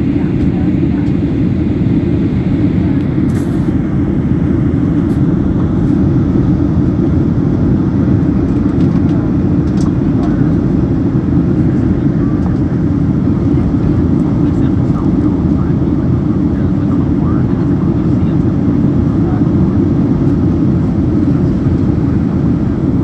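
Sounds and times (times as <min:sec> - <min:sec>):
airliner cabin engine rush: 0:00.0 - 0:23.0.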